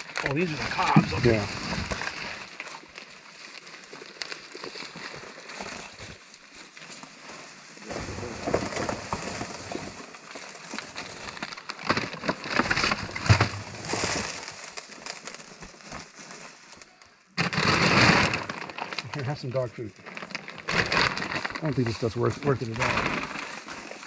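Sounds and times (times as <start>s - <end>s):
corn cobs clattering into barrel: 10.7s - 15.4s, 17.4s - 24.0s.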